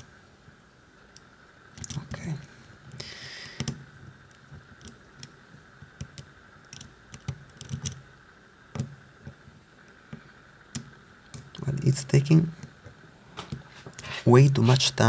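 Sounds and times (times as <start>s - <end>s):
small metallic clicks: 1.1s - 2.3s, 2.9s - 8.1s.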